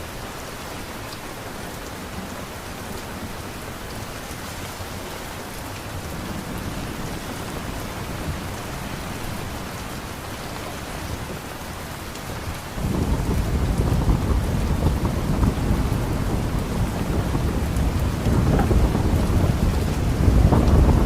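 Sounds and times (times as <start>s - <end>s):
steady rain hissing: 0.0s - 21.0s
deep thunder rumble: 12.7s - 21.0s.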